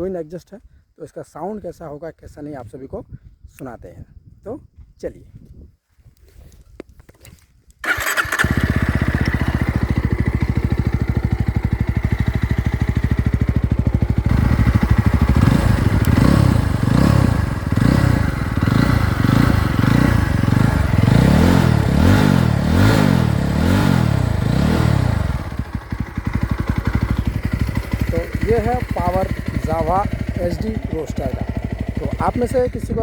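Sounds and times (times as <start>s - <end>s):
motorcycle engine idling: 7.8s - 33.0s
motorcycle engine revving: 7.8s - 33.0s.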